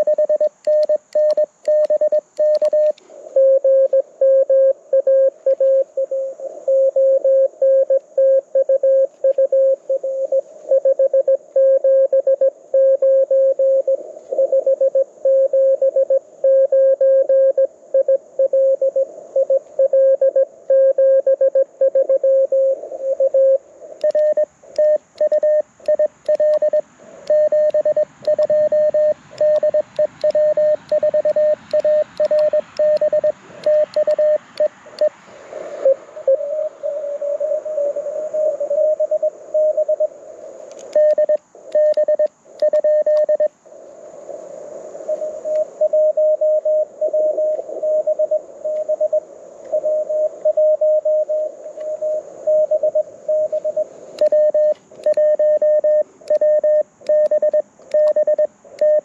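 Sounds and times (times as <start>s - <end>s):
radio band hiss: 0.0s - 8.2s, 9.1s - 20.7s, 21.6s - 58.8s
higher-pitched morse code tone: 0.0s - 35.1s, 40.9s - 43.5s, 49.8s - 59.0s
morse code tone: 0.0s - 35.1s, 40.9s - 43.5s, 49.8s - 59.0s.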